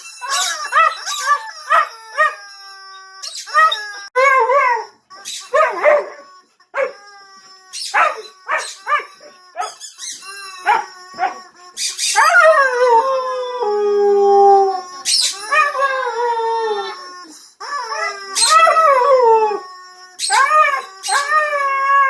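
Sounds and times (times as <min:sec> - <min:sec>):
squeaky toy: 0:00.0 - 0:13.6, 0:14.8 - 0:22.0
dog yipping and barking: 0:00.2 - 0:02.4, 0:03.4 - 0:07.1, 0:07.8 - 0:12.4
dog howling: 0:00.3 - 0:02.4, 0:03.5 - 0:07.0, 0:07.8 - 0:09.8, 0:10.6 - 0:11.5, 0:12.1 - 0:17.0, 0:17.6 - 0:22.0.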